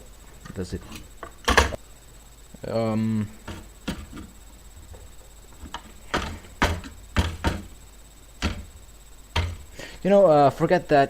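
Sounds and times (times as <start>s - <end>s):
hard parts clicking and knocking: 5.6s - 7.8s, 8.4s - 8.7s, 9.3s - 9.8s.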